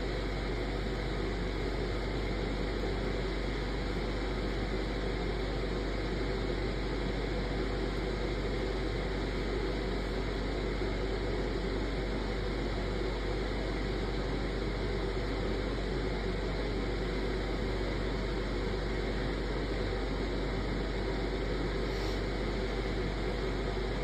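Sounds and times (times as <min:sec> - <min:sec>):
steady hiss: 0:21.6 - 0:23.9.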